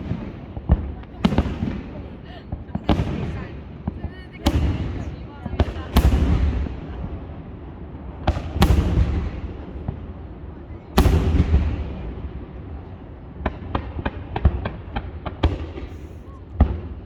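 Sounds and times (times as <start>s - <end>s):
sharp firework cracks: 0.0s - 2.1s, 2.8s - 7.2s, 8.3s - 10.0s, 11.0s - 12.4s.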